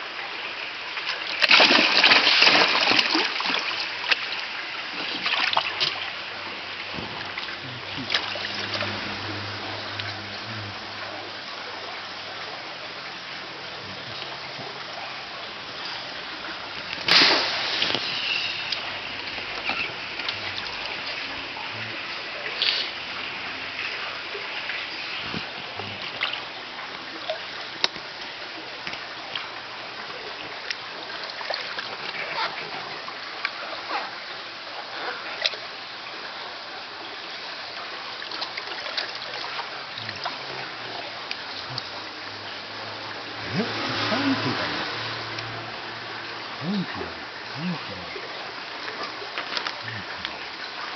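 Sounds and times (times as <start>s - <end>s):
fish splashing in water: 1.0s - 12.3s, 14.3s - 28.0s
water dripping: 1.0s - 32.2s, 37.8s - 50.9s
water bubbling: 5.1s - 27.9s, 38.5s - 50.9s.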